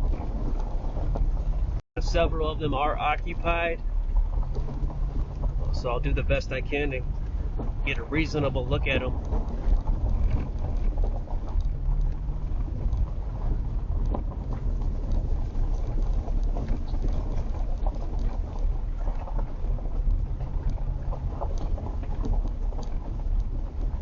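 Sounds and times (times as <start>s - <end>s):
road noise inside a vehicle: 0.0s - 24.0s.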